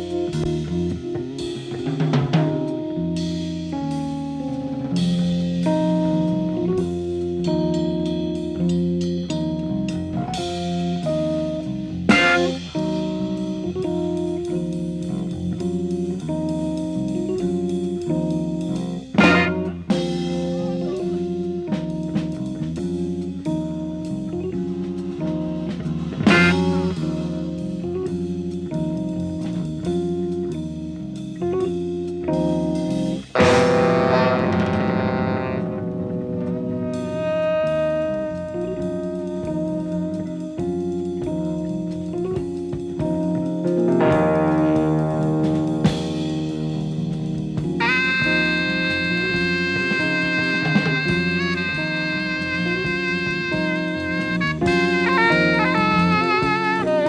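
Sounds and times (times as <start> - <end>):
guitar chords: 0.0 - 57.0
jazz fusion band playing: 0.0 - 57.0
sharp loud band accent: 19.2 - 21.1, 33.4 - 38.6.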